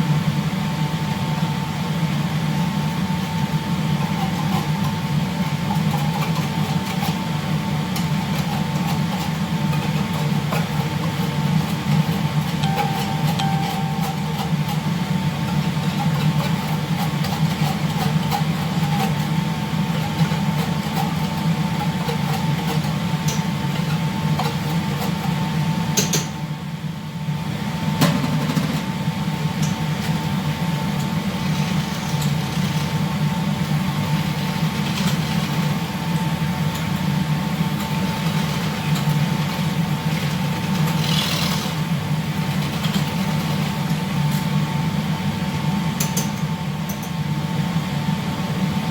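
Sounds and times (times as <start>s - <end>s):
thin steady whine: 11.5s - 16.0s.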